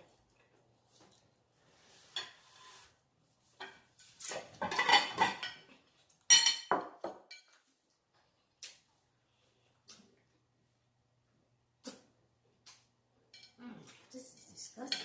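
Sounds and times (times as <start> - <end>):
plates and cutlery clattering: 2.0 - 2.6, 3.6 - 7.6.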